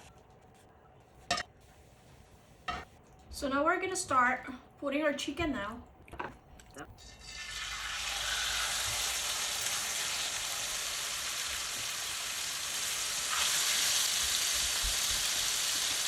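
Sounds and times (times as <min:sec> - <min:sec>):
chicken sizzling in a pan: 0:07.2 - 0:16.0.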